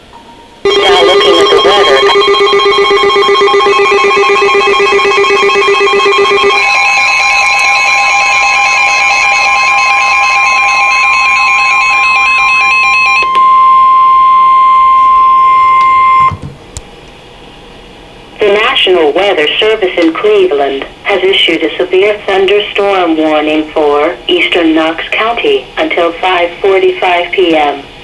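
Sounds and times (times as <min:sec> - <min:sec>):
faint beeping tones: 0:00.2 - 0:07.6
steady high-pitched alert tone: 0:00.2 - 0:16.3
warbling alert tones: 0:00.7 - 0:13.3.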